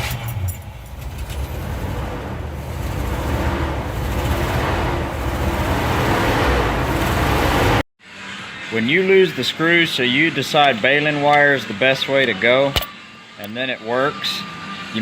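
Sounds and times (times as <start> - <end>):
pickup truck engine running: 0.5 - 7.8.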